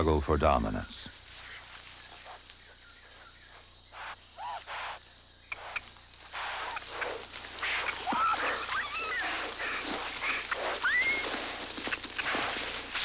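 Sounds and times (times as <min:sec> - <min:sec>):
insects shrilling: 0:00.6 - 0:13.0
short rustling bursts: 0:05.6 - 0:13.0.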